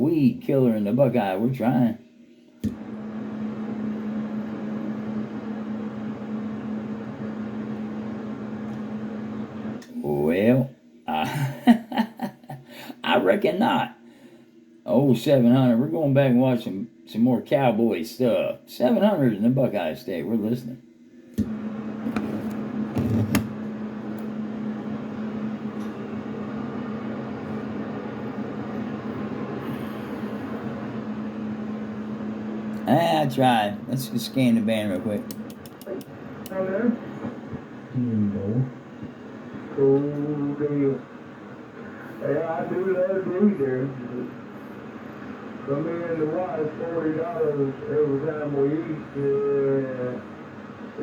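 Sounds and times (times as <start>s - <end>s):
steady hum: 0.0s - 51.0s
radio static hiss: 27.7s - 51.0s
low speaker hum: 33.8s - 51.0s.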